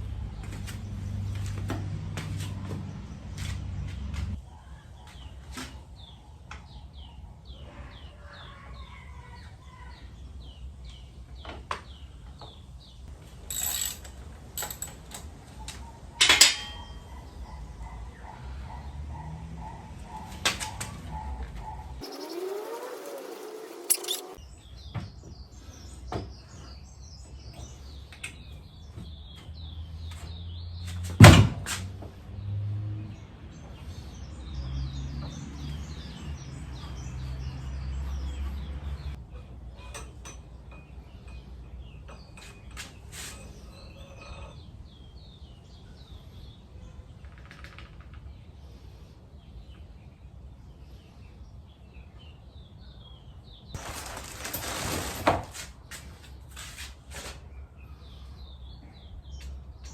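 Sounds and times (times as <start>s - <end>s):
small birds chirping: 0.0s - 31.1s, 55.8s - 59.9s.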